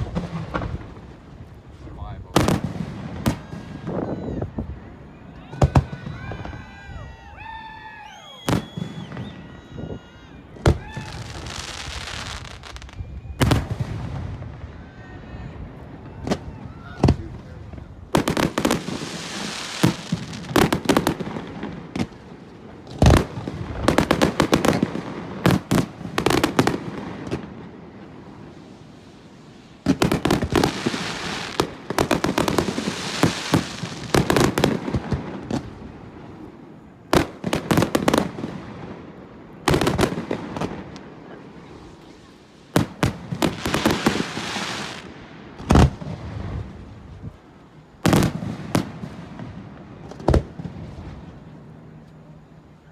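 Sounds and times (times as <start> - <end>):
rapid firework crackling: 0.0 - 4.3, 5.5 - 15.0, 16.1 - 27.5, 28.1 - 36.5, 39.6 - 47.2
firework shells bursting with bangs: 8.1 - 14.6, 29.3 - 47.1.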